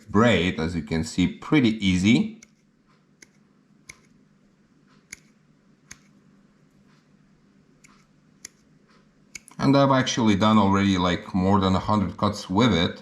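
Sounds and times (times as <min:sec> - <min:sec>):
pliers snipping fishing line: 0:09.3 - 0:09.6.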